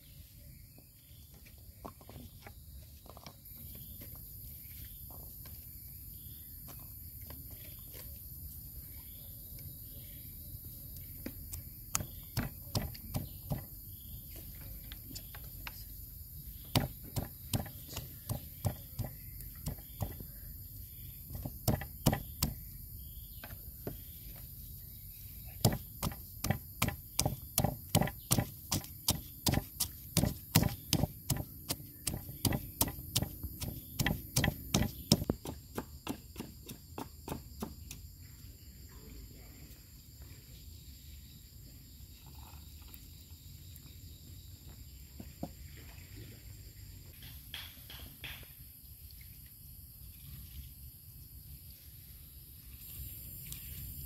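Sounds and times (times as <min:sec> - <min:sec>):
knife chopping on wooden board: 0:11.9 - 0:13.7, 0:16.7 - 0:20.2, 0:21.3 - 0:22.7, 0:25.6 - 0:38.0.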